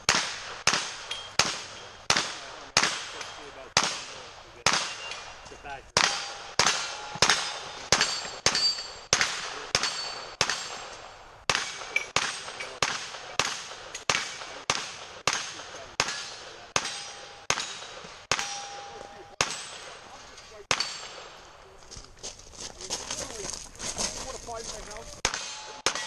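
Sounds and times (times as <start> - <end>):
rapid gunfire: 0.0 - 5.0, 6.0 - 18.6
metallic ring of steel targets: 0.3 - 14.6, 15.3 - 21.5, 25.2 - 26.0.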